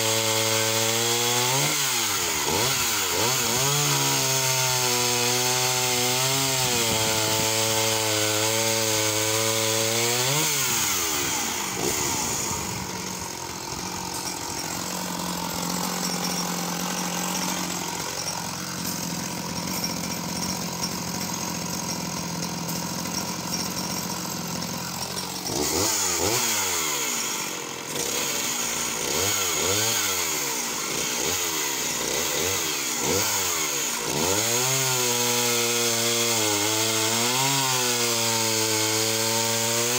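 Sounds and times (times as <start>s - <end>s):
chainsaw revving and idling: 0.0s - 39.9s.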